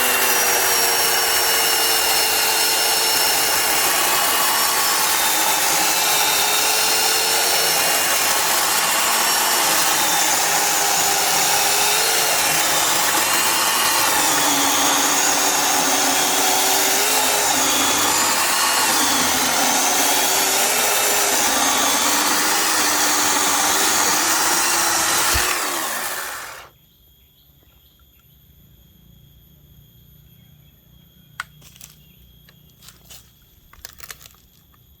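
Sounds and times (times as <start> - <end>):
electric chainsaw cutting wood: 0.0 - 26.7.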